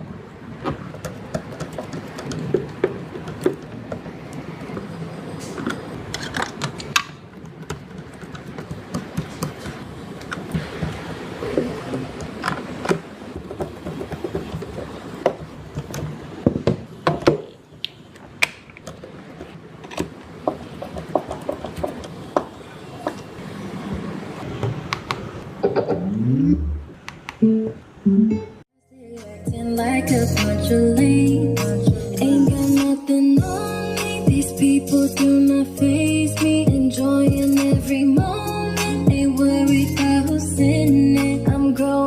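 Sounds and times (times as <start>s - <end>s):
handling noise: 0.5s - 26.0s
tools clicking and tapping: 5.6s - 10.4s.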